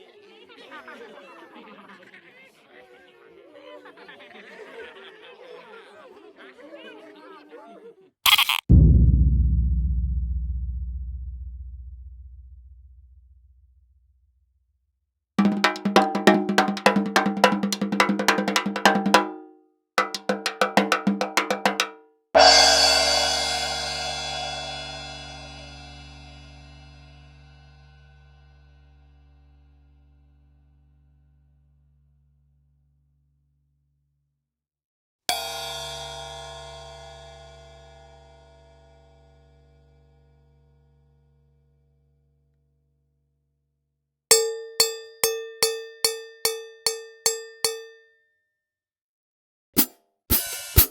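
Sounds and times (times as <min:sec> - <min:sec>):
low hum: 0:08.7 - 0:11.8
cartoon hollow knocking runs: 0:15.4 - 0:19.4, 0:20.0 - 0:22.0
metallic clang ringing: 0:44.3 - 0:48.0.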